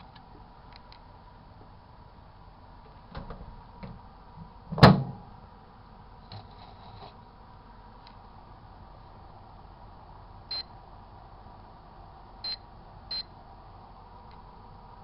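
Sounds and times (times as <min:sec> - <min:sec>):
microwave door latching knock: 0:04.8 - 0:05.2.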